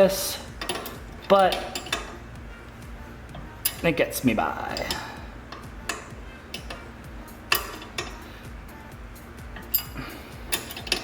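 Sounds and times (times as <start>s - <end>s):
wrench clinking on metal nut: 0.6s - 2.2s, 9.6s - 11.0s.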